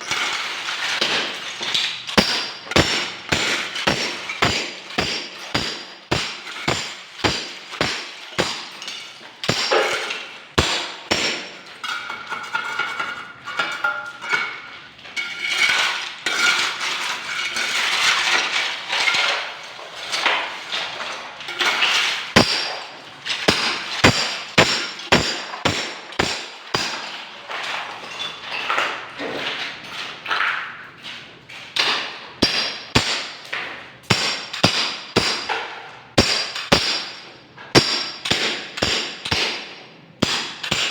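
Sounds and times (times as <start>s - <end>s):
chipping and scraping: 0.0s - 11.8s, 21.6s - 28.0s
hammer striking metal: 2.2s - 11.7s, 22.4s - 22.9s, 23.5s - 27.2s, 32.4s - 40.9s.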